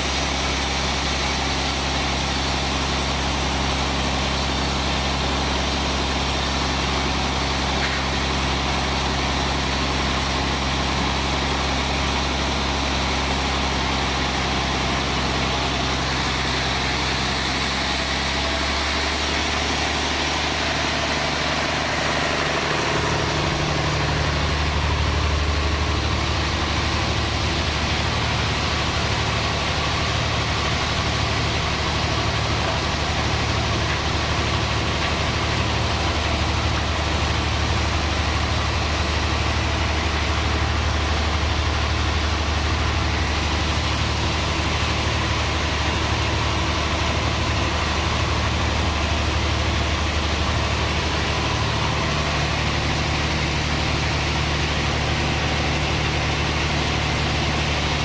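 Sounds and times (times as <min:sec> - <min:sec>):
sawmill machine hum: 0:00.0 - 0:58.0.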